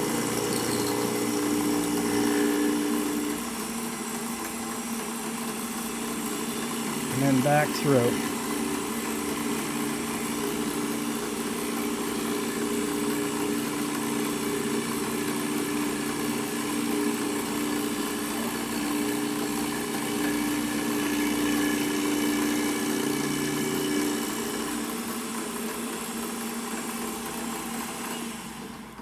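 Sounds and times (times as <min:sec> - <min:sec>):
milling machine cutting metal: 0:00.0 - 0:04.6, 0:05.4 - 0:07.1, 0:08.2 - 0:24.9.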